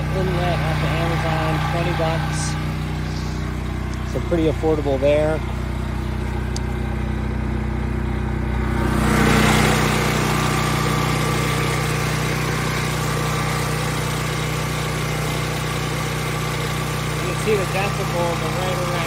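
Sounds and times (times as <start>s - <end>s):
generator engine running: 0.0s - 19.0s.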